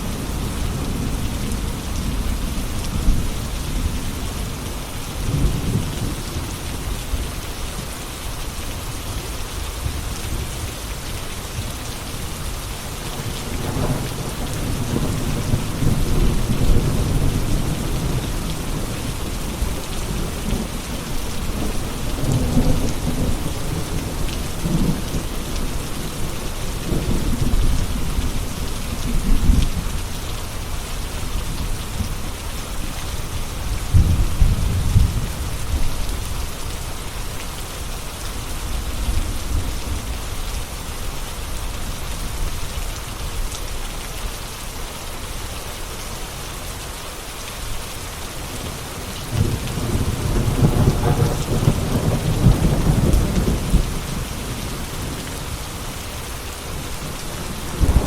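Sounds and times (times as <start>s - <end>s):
steady rain: 0.0s - 58.0s
low rolling thunder: 13.2s - 30.1s, 33.6s - 36.4s, 48.5s - 55.8s, 56.4s - 58.0s.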